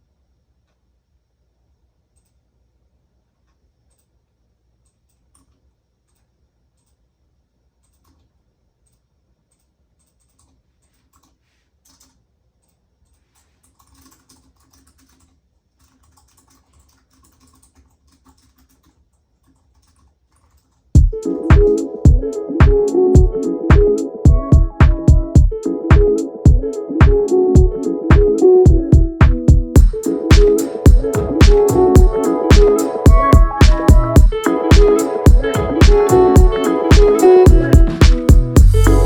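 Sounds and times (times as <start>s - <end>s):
keyboard typing: 8.9s - 39.0s
loud music with a beat: 21.0s - 39.0s.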